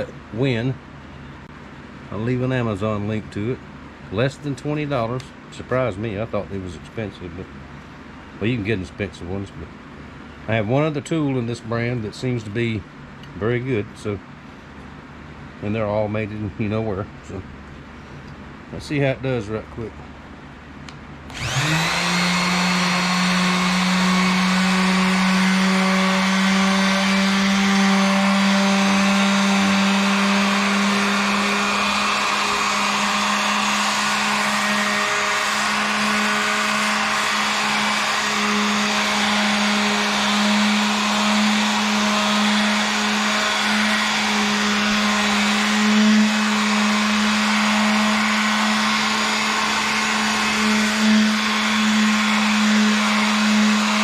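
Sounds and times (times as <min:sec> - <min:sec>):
electric sander sanding wood: 0:21.3 - 0:54.0.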